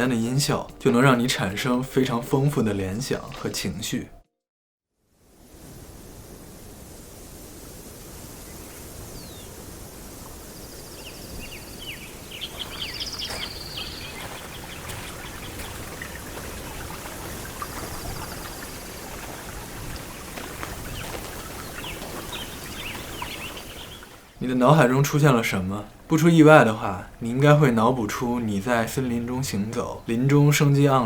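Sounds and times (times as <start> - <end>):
stream babbling: 0.0 - 4.2, 5.8 - 31.0
birdsong chirps and trills: 8.4 - 26.2.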